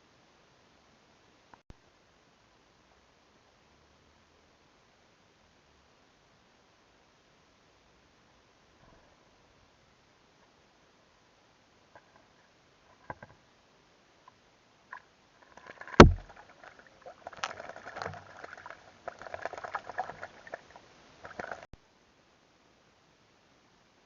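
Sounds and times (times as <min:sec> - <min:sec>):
bird splashing and fluttering in water: 0:14.9 - 0:21.7
sharp knock: 0:16.0 - 0:16.3.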